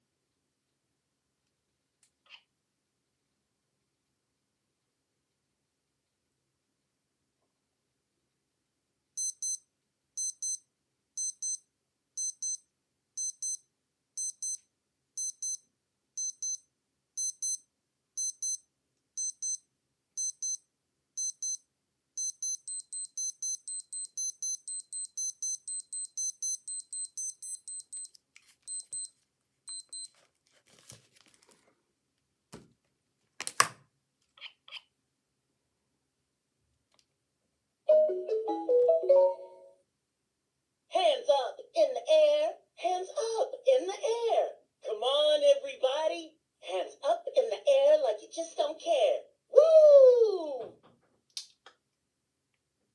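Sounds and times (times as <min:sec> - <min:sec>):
digital watch alarm beeping: 0:09.2 - 0:09.6, 0:10.2 - 0:10.6, 0:11.2 - 0:11.6, 0:12.2 - 0:13.6, 0:14.2 - 0:14.6, 0:15.2 - 0:18.6, 0:19.2 - 0:19.6, 0:20.2 - 0:20.6, 0:21.2 - 0:21.6, 0:22.2 - 0:29.1, 0:29.7 - 0:30.1.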